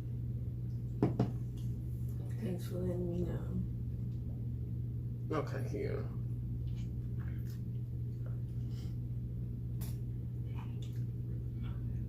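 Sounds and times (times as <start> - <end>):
steady low hum: 0.0 - 12.0
soft chewing: 6.2 - 12.0.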